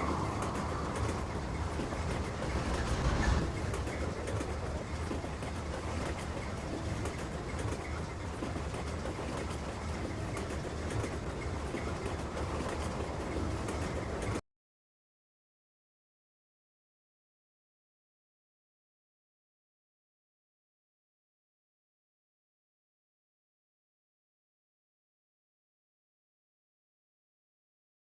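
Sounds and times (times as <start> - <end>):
train rumbling on rails: 0.0 - 14.4.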